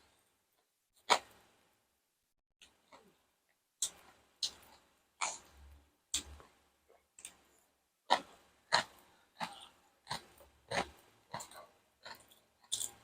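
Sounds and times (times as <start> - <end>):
chewing crunchy food: 3.8 - 6.5, 8.1 - 13.0.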